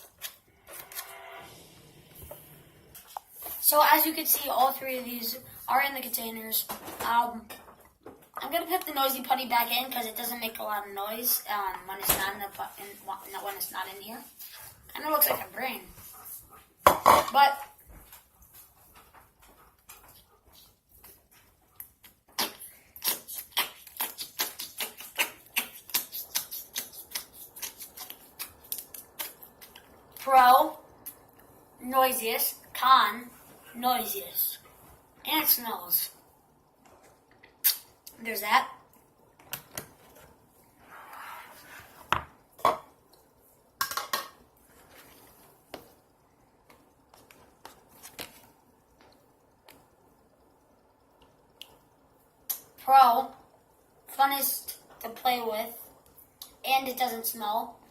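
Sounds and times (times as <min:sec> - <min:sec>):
putty squelching pops: 0:22.0 - 0:30.2
soft rustle: 0:44.6 - 0:46.0.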